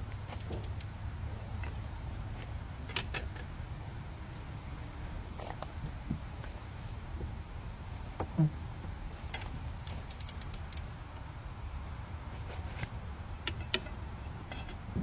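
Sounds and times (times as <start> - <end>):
steady low rumble: 0.0 - 15.0
metallic ratchet clicks: 0.3 - 0.9, 9.3 - 10.9.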